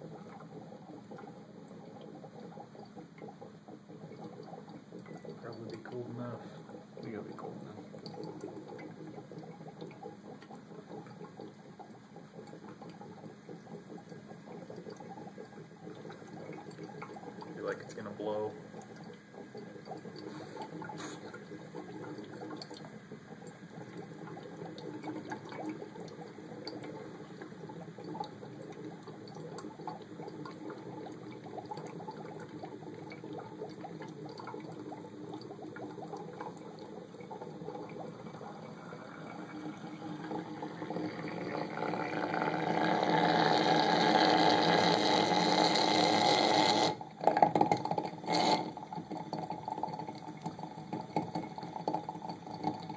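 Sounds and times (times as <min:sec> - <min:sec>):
water boiling and bubbling: 0:00.0 - 0:52.9.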